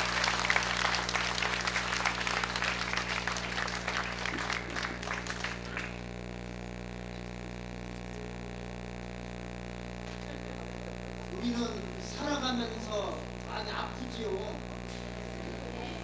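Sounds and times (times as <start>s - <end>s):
audience applauding: 0.0s - 6.1s
low electrical hum: 0.0s - 16.0s.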